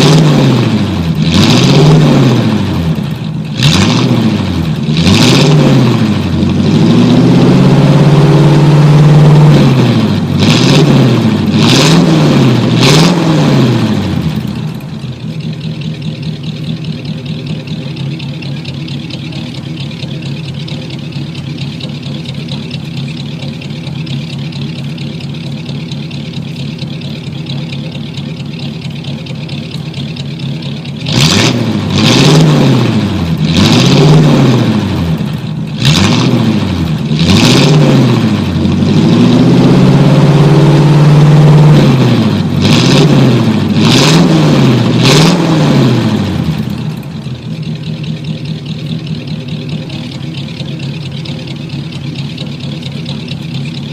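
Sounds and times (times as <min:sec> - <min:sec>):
car engine idling and revving: 0:00.0 - 0:53.9.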